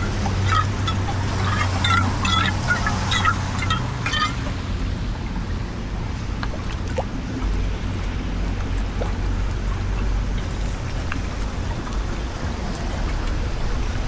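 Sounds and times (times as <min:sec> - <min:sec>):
debris ticking: 0:00.0 - 0:04.7
water rushing into drain: 0:00.0 - 0:14.0.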